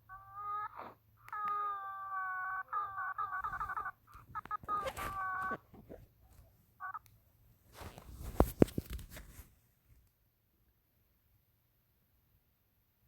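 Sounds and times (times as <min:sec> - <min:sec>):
stomach growling: 0:00.2 - 0:01.7
rustle: 0:07.7 - 0:09.6.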